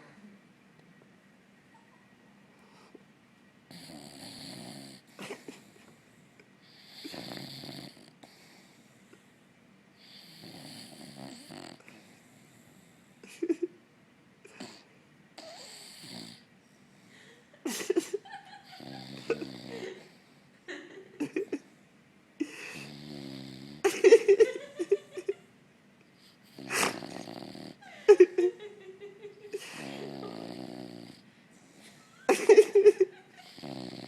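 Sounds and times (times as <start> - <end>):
dog snoring: 3.7 - 5.7, 6.6 - 8.8, 10.0 - 13.0, 14.5 - 16.5, 18.8 - 20.2, 22.7 - 23.9, 26.2 - 27.8, 29.6 - 31.2, 33.4 - 34.0
short sharp snorts: 26.5 - 27.4.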